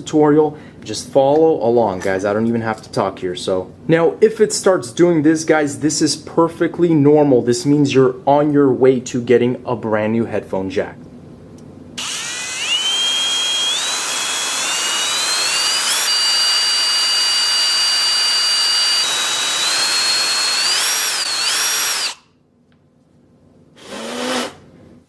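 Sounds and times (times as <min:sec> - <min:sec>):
electric drill whining: 0:12.0 - 0:22.2, 0:23.8 - 0:24.6.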